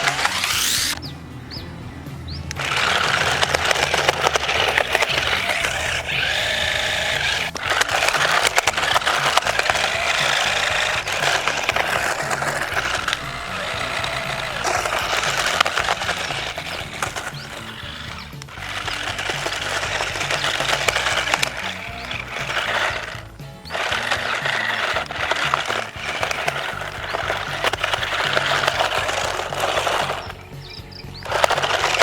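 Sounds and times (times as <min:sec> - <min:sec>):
plastic toy car clattering: 0:00.0 - 0:01.0, 0:02.5 - 0:32.0
background music: 0:00.0 - 0:32.0
toy car motors whining: 0:00.0 - 0:32.0.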